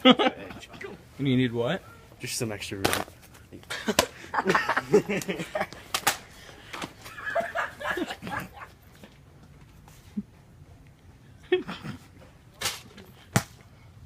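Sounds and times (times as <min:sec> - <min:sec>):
young men laughing: 0:00.0 - 0:01.0, 0:03.6 - 0:08.9.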